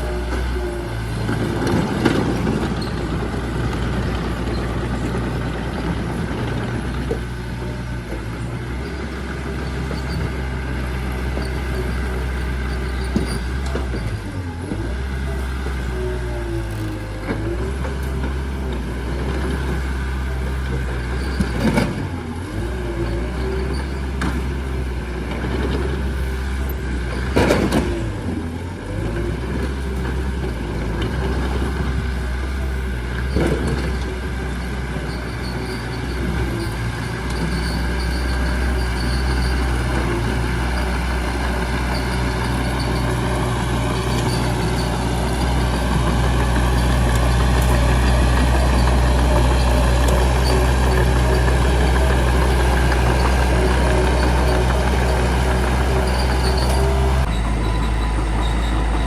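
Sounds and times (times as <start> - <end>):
bulldozer diesel engine running: 0.0 - 59.0
wavering squeal: 46.6 - 59.0.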